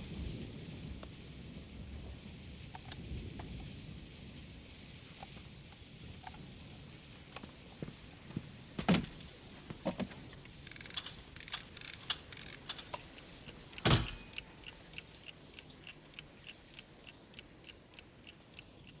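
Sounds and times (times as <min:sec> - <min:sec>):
light ticking: 0:01.0 - 0:01.5, 0:02.6 - 0:03.9, 0:04.7 - 0:09.2, 0:09.8 - 0:19.0
cartoon clicks and rattling clatter: 0:02.7 - 0:03.6, 0:09.9 - 0:15.1
loud metallic clank: 0:13.8 - 0:14.4.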